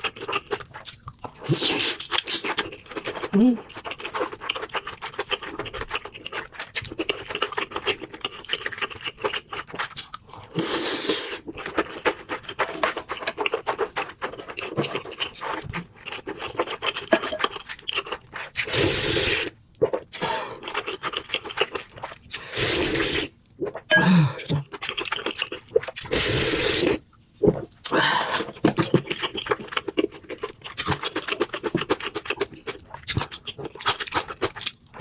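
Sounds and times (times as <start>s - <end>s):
person chewing: 0.0s - 35.0s.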